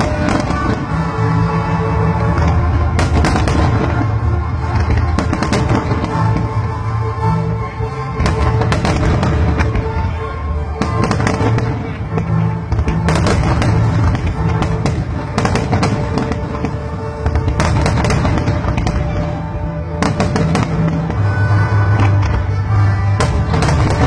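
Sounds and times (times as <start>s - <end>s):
fireworks bursting and crackling: 0.0s - 24.0s.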